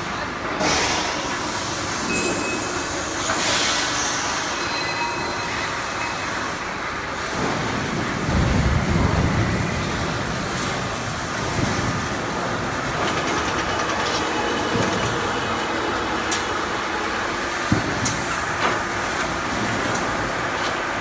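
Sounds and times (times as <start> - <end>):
production line machine noise: 0.0 - 21.0
low machine rumble: 7.9 - 18.6.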